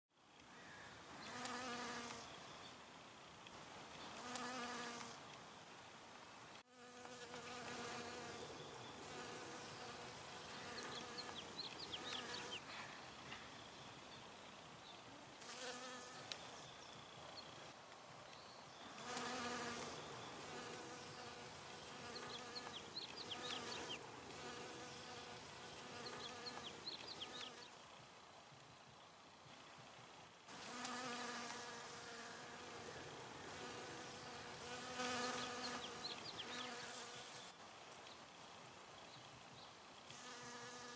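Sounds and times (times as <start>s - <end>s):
bees buzzing: 19.0s - 27.6s, 30.6s - 37.5s.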